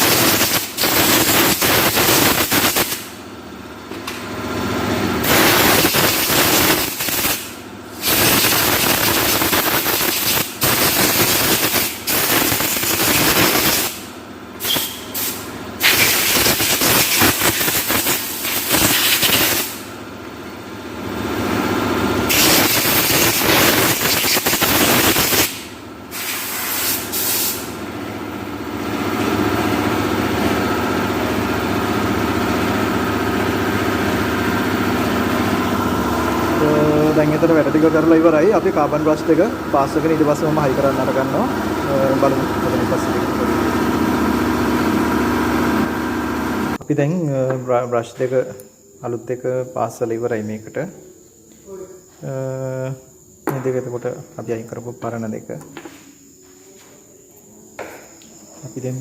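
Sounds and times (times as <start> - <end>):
air blow gun hissing bursts: 0.0 - 3.1, 5.2 - 19.9, 22.3 - 27.8
steady mechanical hum: 0.0 - 59.0.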